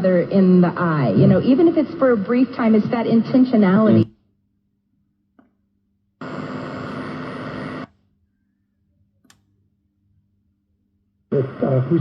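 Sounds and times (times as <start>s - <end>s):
radio static hiss: 6.2s - 7.9s, 11.3s - 12.0s.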